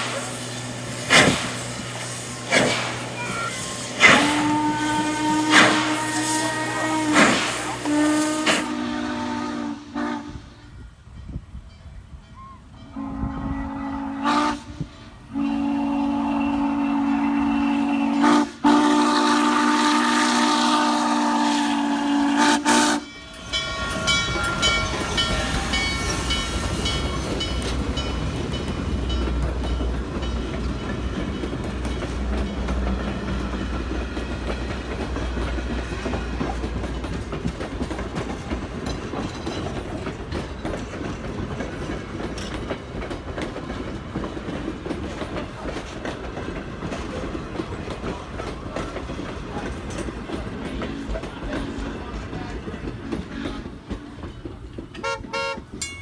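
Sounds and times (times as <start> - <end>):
wheels clattering over rail joints: 0.0 - 8.8, 23.1 - 56.0
steam locomotive chime whistle: 0.0 - 40.9, 44.8 - 56.0
train rumbling past: 0.0 - 56.0.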